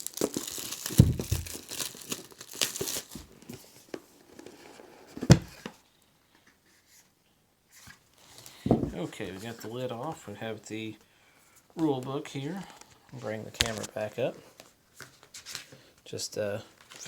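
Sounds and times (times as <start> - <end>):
plastic shrink wrap crinkling: 0.0 - 4.8, 11.8 - 15.7
dull thump: 8.7 - 9.0.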